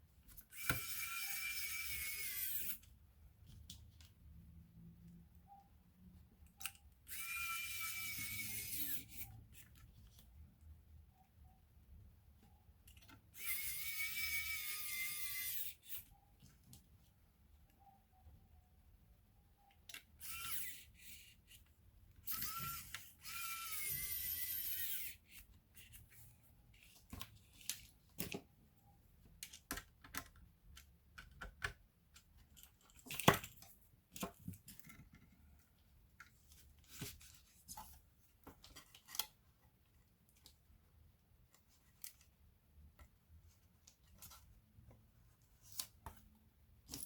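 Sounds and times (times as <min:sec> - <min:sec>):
small tool whirring and hissing: 0:00.5 - 0:02.9, 0:07.1 - 0:09.7, 0:13.4 - 0:16.1, 0:20.2 - 0:26.2.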